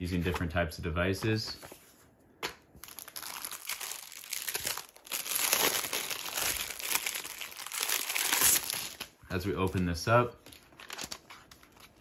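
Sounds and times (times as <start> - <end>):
packaging crinkling and rustling: 2.8 - 12.0.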